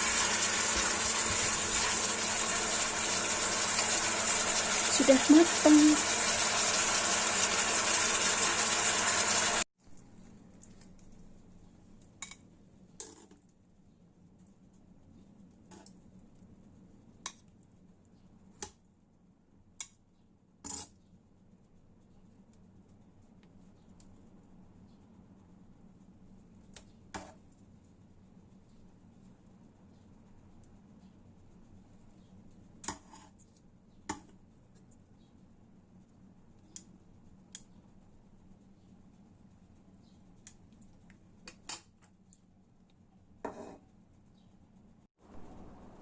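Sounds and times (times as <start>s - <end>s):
faint low hum: 42.1s - 46.0s.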